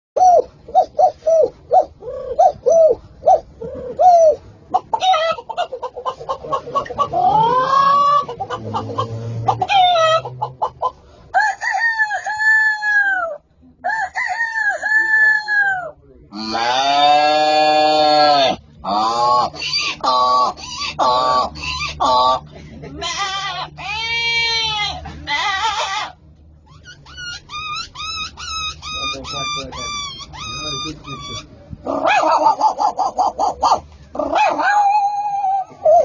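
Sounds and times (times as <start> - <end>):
person imitating chicken clucks: 3.6 - 11.0, 14.6 - 26.1.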